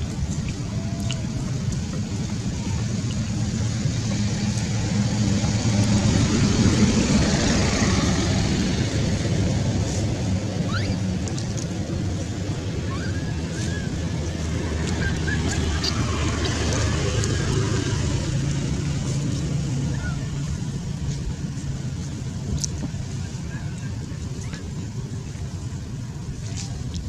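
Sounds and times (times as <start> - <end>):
vehicle engine rumble: 0.0 - 27.0.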